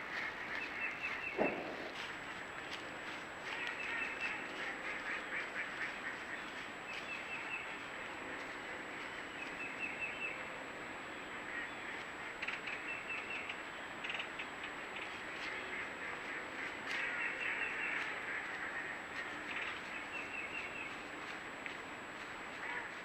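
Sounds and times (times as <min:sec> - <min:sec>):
ducks quacking: 0:00.0 - 0:02.2, 0:03.4 - 0:06.6, 0:15.4 - 0:19.8, 0:22.5 - 0:23.0.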